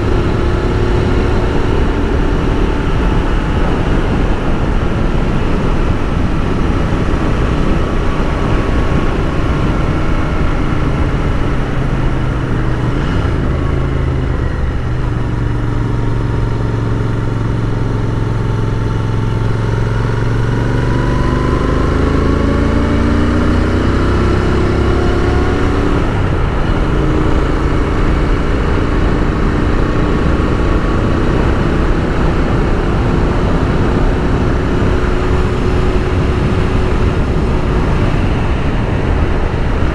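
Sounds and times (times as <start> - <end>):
wind rush: 0.0 - 16.6, 19.4 - 39.9
motorcycle engine accelerating: 0.0 - 39.9.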